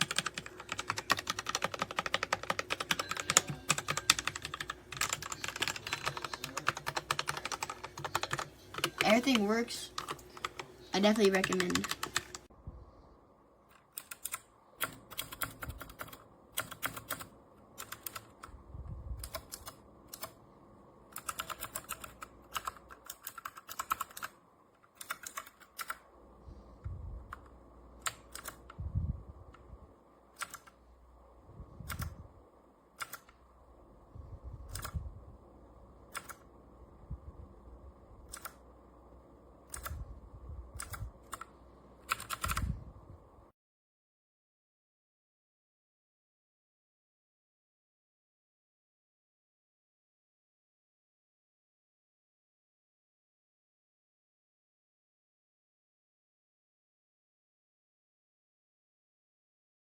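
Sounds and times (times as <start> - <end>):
mechanical keyboard keystroke clicks: 36.1 - 36.4, 38.3 - 38.6, 42.1 - 42.7.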